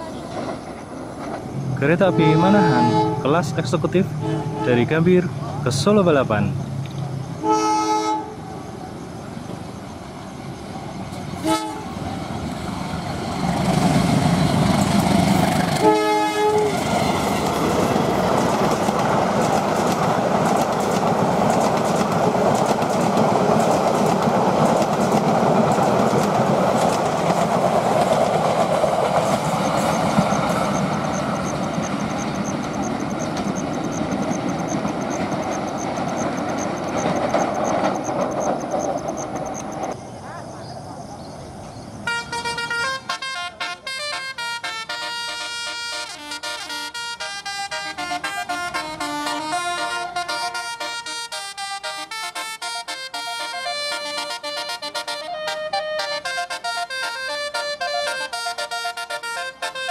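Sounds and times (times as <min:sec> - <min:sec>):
train wheels rushing on rails: 0:00.0 - 0:07.8, 0:08.4 - 0:40.2
train horn: 0:01.9 - 0:03.5, 0:04.2 - 0:05.0, 0:07.4 - 0:08.6, 0:11.4 - 0:12.0, 0:15.7 - 0:17.8, 0:42.0 - 0:59.9.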